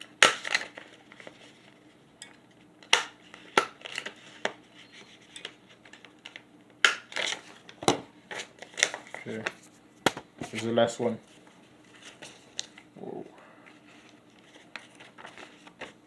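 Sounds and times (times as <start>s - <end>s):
paper handling: 13.7s - 16.0s.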